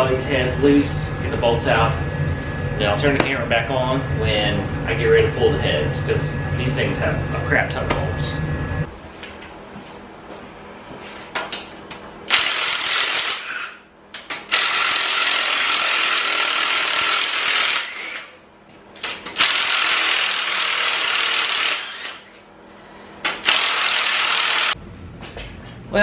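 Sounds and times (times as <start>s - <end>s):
ratchet wrench ratcheting: 12.3s - 13.7s, 14.4s - 18.2s, 23.4s - 24.8s.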